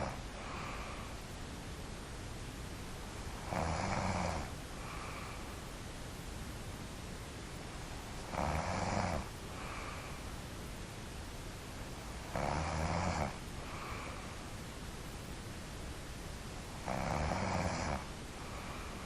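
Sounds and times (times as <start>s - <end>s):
faint breath: 0.0s - 1.4s, 4.7s - 5.9s, 9.2s - 10.5s, 13.5s - 14.8s, 18.0s - 19.0s
steady hiss: 0.0s - 19.0s
person snoring: 3.4s - 5.4s, 8.3s - 10.1s, 12.3s - 14.2s, 16.8s - 19.0s.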